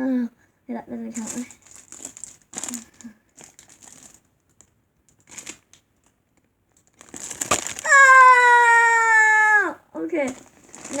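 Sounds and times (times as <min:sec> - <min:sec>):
squishy toys rustling and crinkling: 0:00.9 - 0:11.0
child shouting ah: 0:07.9 - 0:09.8.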